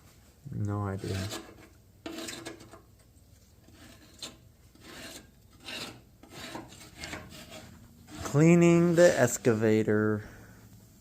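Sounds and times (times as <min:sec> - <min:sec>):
gritty scraping on a surface: 0:00.8 - 0:02.9, 0:03.6 - 0:09.9.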